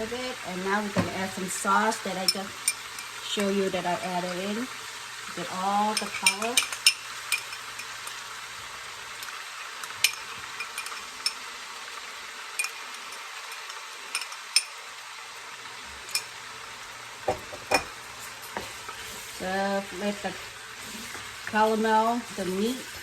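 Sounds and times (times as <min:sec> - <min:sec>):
pork sizzling in oil: 0:00.0 - 0:23.0
utensil stirring against pot: 0:05.2 - 0:08.6, 0:09.2 - 0:11.5, 0:17.2 - 0:23.0.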